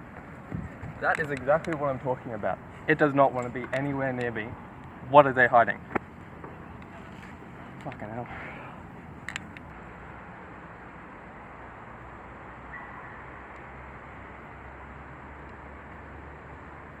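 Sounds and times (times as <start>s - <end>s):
outdoor background noise: 0.0s - 17.0s
sharp clicks: 9.1s - 9.7s.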